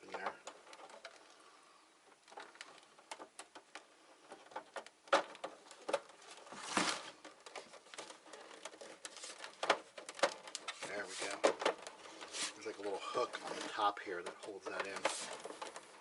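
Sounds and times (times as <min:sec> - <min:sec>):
plastic parts clicking and knocking: 0:00.0 - 0:16.0
plastic scraping rub: 0:00.0 - 0:16.0.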